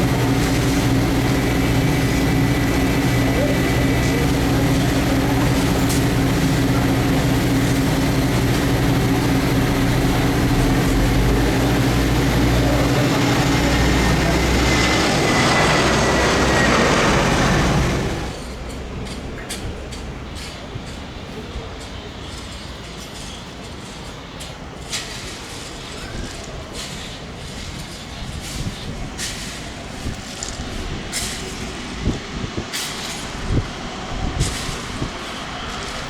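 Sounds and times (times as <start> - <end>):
jet engines droning: 0.0 - 18.7.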